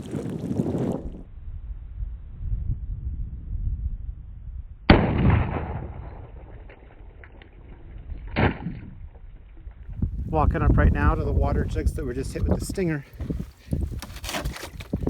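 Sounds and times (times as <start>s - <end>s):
wind on microphone: 0.0s - 15.0s
pistol shot: 4.9s - 6.8s.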